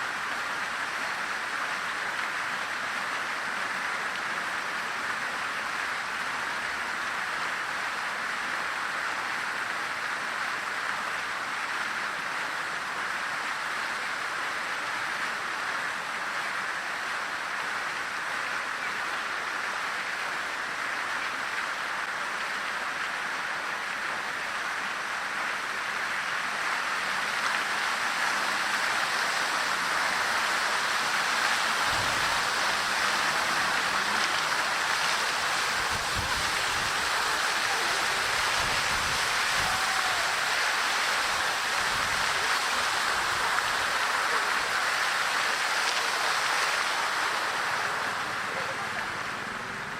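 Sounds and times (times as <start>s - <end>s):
fountain water splashing: 0.0s - 49.9s.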